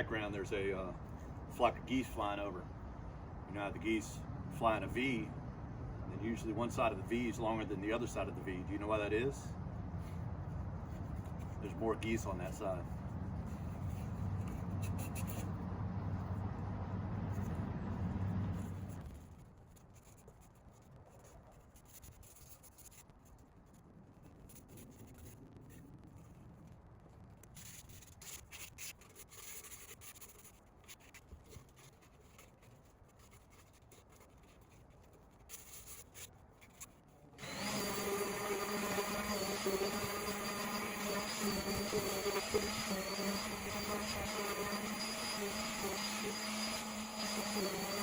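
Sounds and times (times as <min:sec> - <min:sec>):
sandpaper rubbing on wood: 0:35.5 - 0:48.0
loud electric buzz: 0:37.4 - 0:48.0.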